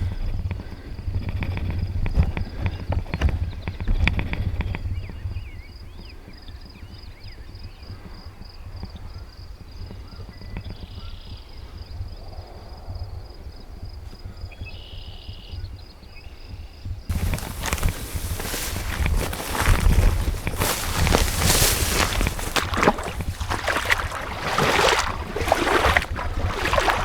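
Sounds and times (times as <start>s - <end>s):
birds chirping: 17.1s - 27.0s
footsteps through a field: 17.1s - 27.0s
wind on microphone: 17.1s - 27.0s.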